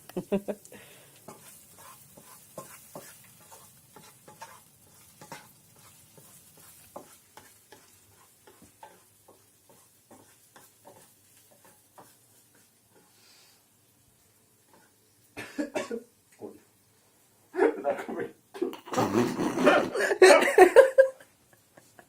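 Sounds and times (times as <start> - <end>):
food sizzling in a frying pan: 0.0 - 18.6
utensil scraping a pan: 1.2 - 13.6.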